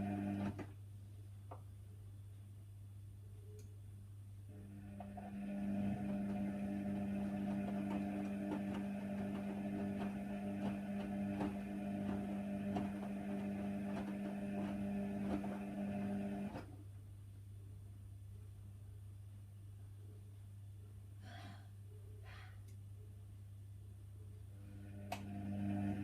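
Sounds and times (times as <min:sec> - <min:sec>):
washing machine motor hum: 0:00.0 - 0:00.8, 0:04.5 - 0:16.8, 0:24.6 - 0:26.0.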